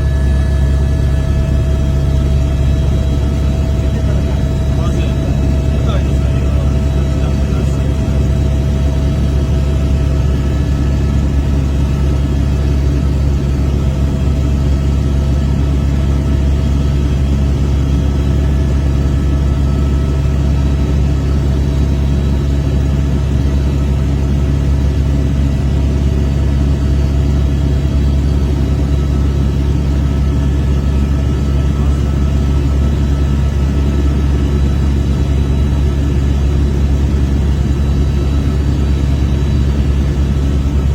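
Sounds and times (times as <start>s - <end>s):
helicopter rotor drone: 0.0s - 40.9s.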